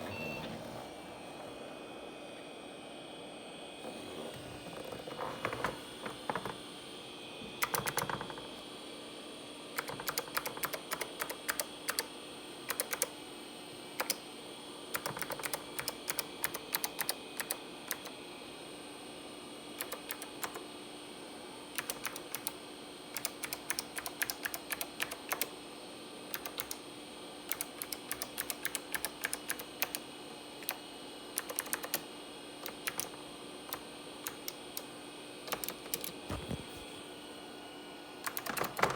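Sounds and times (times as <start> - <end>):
faint steady hum: 0.0 - 38.9
clicky keyboard typing: 7.6 - 8.4, 9.8 - 12.1, 12.7 - 13.1, 14.0 - 14.2, 14.9 - 18.1, 19.8 - 20.6, 21.8 - 25.5, 26.3 - 26.8, 27.5 - 30.0, 30.6 - 30.8, 31.4 - 34.9, 35.5 - 36.8, 38.2 - 38.9.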